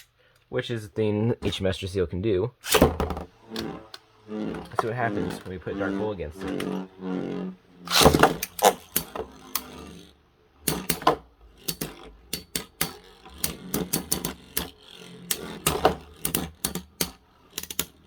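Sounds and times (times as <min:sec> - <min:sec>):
spinning tops clashing: 0:02.7 - 0:18.0
sharp plastic clicks and clacks: 0:07.9 - 0:18.0.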